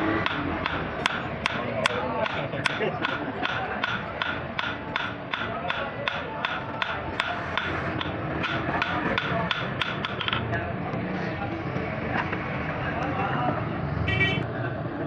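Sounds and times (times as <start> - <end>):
hammer strikes on steel blade: 0.0 - 10.3
rasping scraping noise: 5.3 - 10.4.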